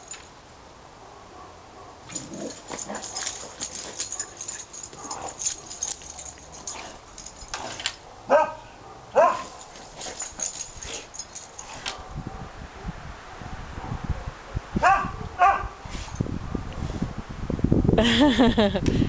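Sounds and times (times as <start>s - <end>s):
dog barking: 1.1s - 2.1s, 8.1s - 9.7s, 11.9s - 13.0s, 13.8s - 15.8s
bushes rustling and crackling: 2.0s - 8.3s, 9.1s - 12.1s.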